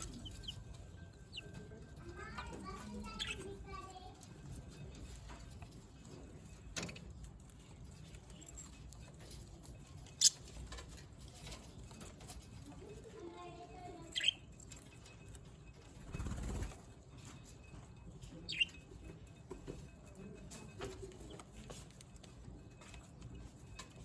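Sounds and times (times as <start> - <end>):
parrot chirps: 2.9 - 3.5, 10.2 - 10.6, 14.1 - 14.6, 18.5 - 18.8
wings fluttering: 16.0 - 16.8.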